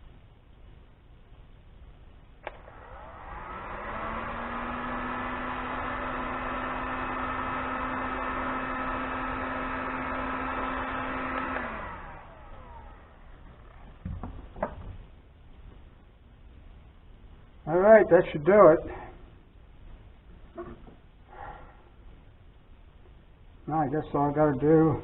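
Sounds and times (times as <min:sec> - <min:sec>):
heat gun fan whine: 0:02.4 - 0:14.2.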